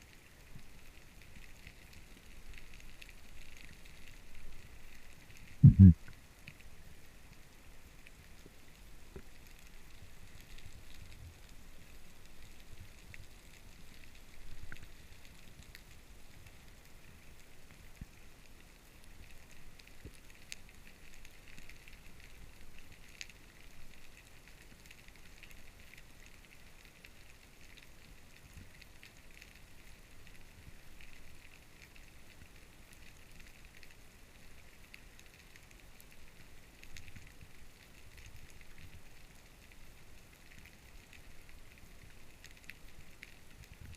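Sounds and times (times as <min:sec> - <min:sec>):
underwater crackle: 0:00.0 - 0:43.9
low rumble: 0:05.6 - 0:06.1.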